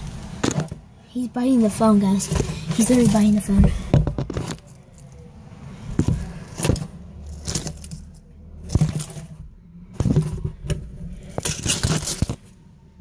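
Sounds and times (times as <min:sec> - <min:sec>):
knocks and scrapes on phone microphone: 0:02.3 - 0:04.6.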